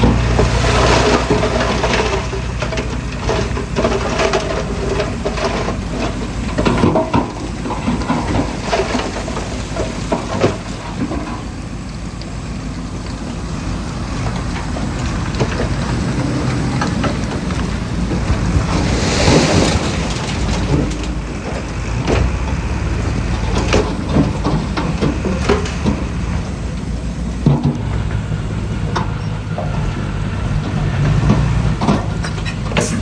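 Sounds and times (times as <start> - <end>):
dirt and stone crunching: 0.0 - 33.0
heavy diesel engine rumbling: 0.0 - 33.0.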